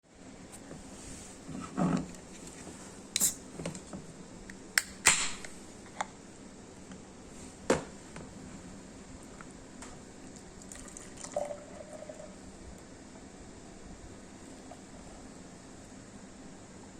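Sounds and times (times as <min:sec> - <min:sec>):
can tab cracking open with hiss: 0:03.2 - 0:03.5, 0:04.8 - 0:05.5.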